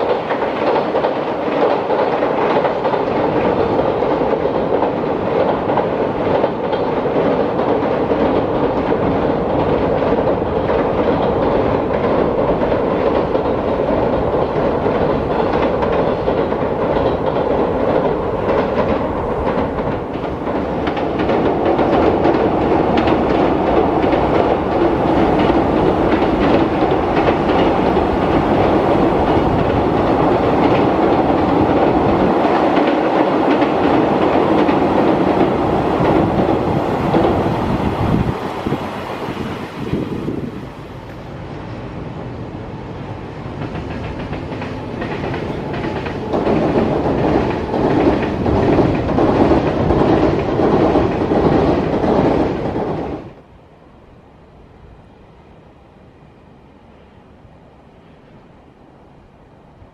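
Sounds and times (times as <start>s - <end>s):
train wheels clattering over rail joints: 0.0s - 41.3s, 43.5s - 53.4s.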